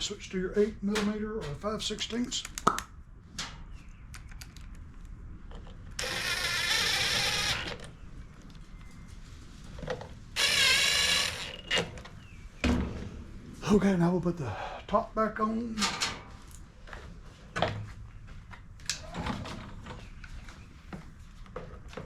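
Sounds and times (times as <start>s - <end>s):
power driver running: 6.0s - 7.9s, 10.4s - 11.9s.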